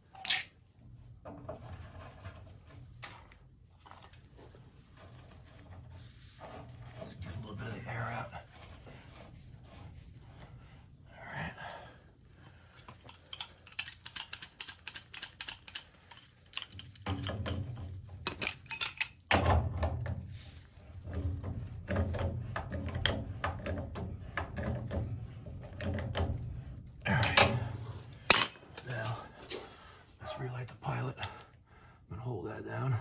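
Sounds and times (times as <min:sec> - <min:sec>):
metal tools clinking: 0:13.0 - 0:19.4, 0:27.1 - 0:29.3.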